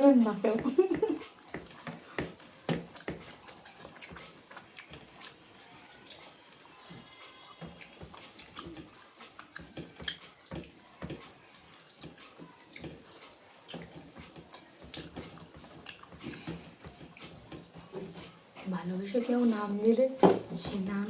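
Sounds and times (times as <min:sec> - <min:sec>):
chewing and lip smacks: 0:01.2 - 0:10.9, 0:11.6 - 0:17.4.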